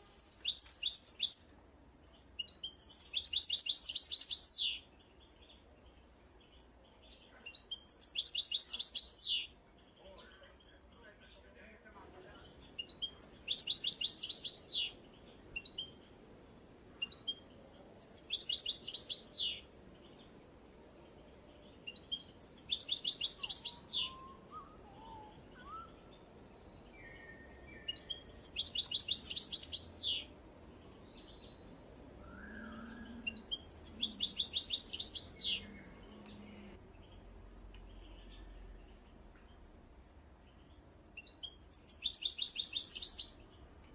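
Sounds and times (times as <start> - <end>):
songbird singing: 0.0 - 43.9
faint bird calls: 21.8 - 30.3, 31.2 - 36.8.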